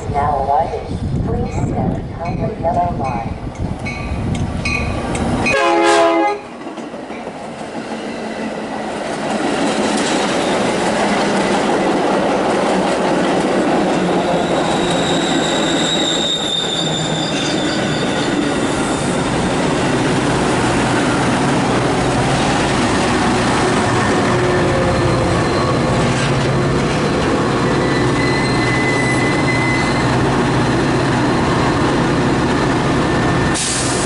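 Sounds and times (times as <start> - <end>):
train wheels rushing on rail: 0.0 - 34.0
high wheel squeal: 14.2 - 19.2, 24.5 - 26.3, 26.9 - 30.8.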